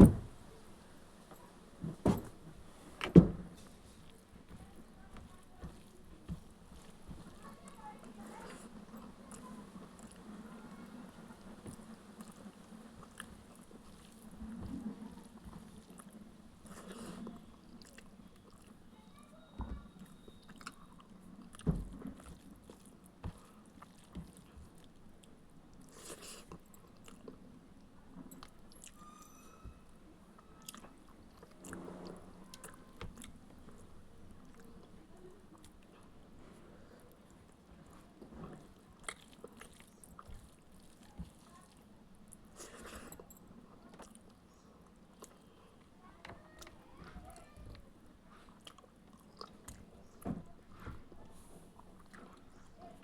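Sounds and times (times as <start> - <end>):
person chewing: 22.2 - 27.4, 30.5 - 35.0, 37.1 - 43.2, 48.4 - 49.9.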